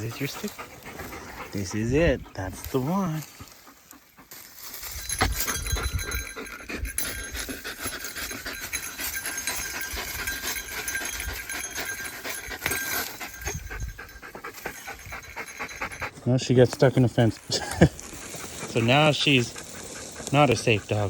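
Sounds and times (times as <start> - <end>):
dog panting: 0.0 - 21.0
small bell jingling: 4.3 - 16.2.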